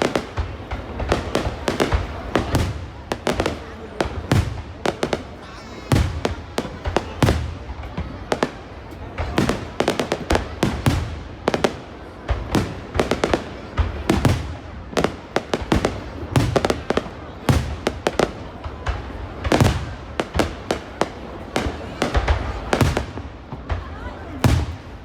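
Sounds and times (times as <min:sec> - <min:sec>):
fireworks bangs and booms: 0:00.0 - 0:25.0.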